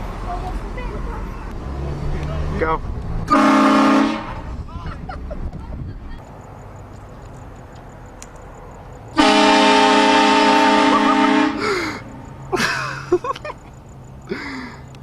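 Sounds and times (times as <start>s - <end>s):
air horn chord: 3.3s - 4.4s, 9.2s - 11.6s.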